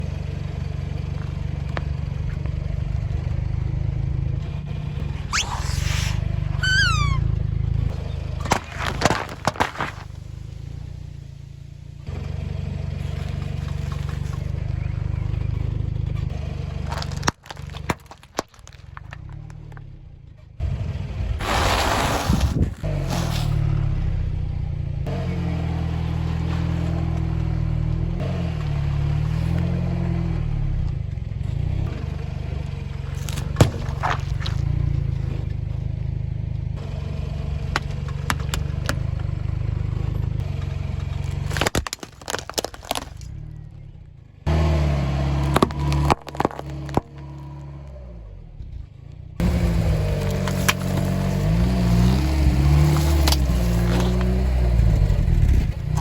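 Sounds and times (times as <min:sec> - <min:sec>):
car engine running: 0:00.0 - 0:56.0
sharp pop under tyre: 0:05.2 - 0:07.3, 0:07.9 - 0:10.2, 0:33.1 - 0:35.6, 0:37.7 - 0:39.3, 0:45.4 - 0:47.5, 0:50.1 - 0:51.7, 0:52.8 - 0:56.0
things crushed under wheels: 0:08.3 - 0:10.3, 0:13.0 - 0:14.6, 0:16.8 - 0:19.8, 0:33.1 - 0:35.5, 0:41.0 - 0:43.5, 0:45.4 - 0:47.5, 0:50.1 - 0:56.0.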